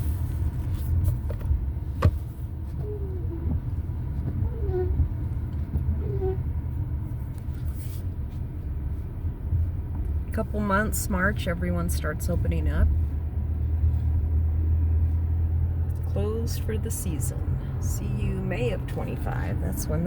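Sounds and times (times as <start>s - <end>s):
car road and engine rumble: 0.0s - 20.0s.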